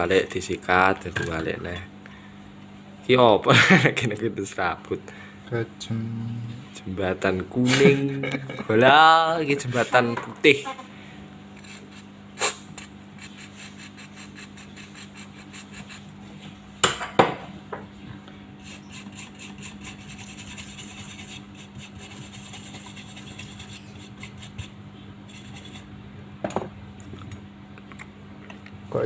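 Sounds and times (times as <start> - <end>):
steady low hum: 0.0 - 29.0
small tools scraping circuit board: 12.7 - 16.1, 18.6 - 25.9.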